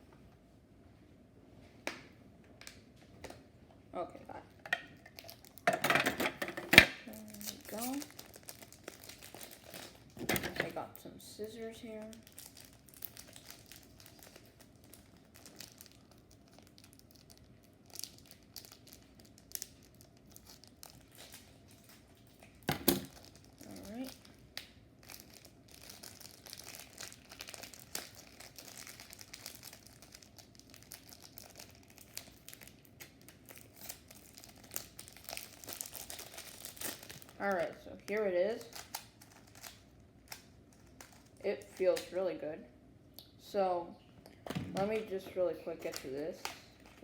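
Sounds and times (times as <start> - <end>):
plastic packaging crinkling and tearing: 4.9 - 5.7, 6.7 - 10.8, 11.4 - 42.2, 44.8 - 47.0
small crackles and clicks: 5.0 - 5.7, 11.8 - 37.7.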